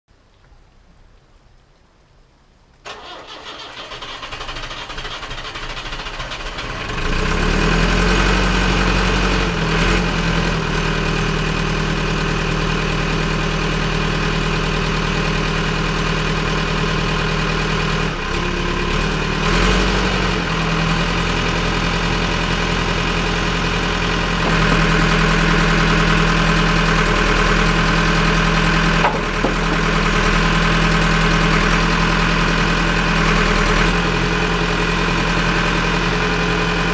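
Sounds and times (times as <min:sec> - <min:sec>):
diesel engine idling: 0:02.8 - 0:36.9.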